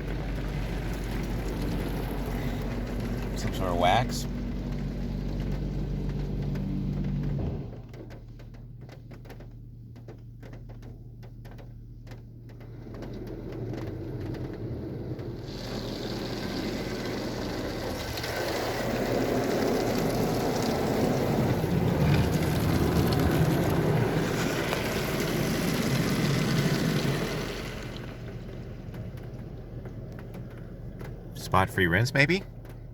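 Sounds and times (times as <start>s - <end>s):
spray jets drumming on car: 15.4s - 30.6s.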